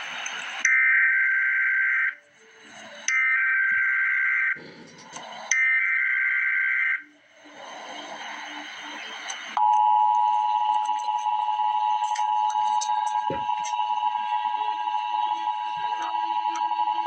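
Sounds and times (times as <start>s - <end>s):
radio hiss: 4.4s - 9.6s
two-tone attention signal: 9.6s - 17.0s.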